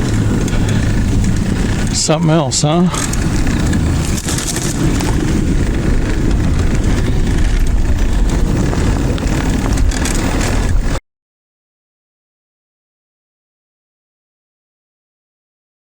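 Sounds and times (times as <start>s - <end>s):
tyre noise: 0.0s - 11.0s
wind on microphone: 0.0s - 11.0s.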